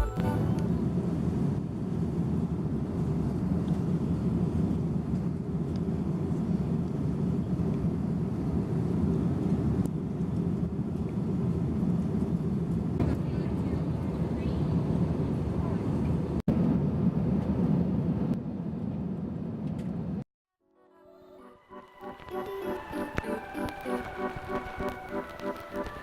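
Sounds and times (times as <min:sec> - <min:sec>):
airliner cabin rumble: 0:00.0 - 0:20.2.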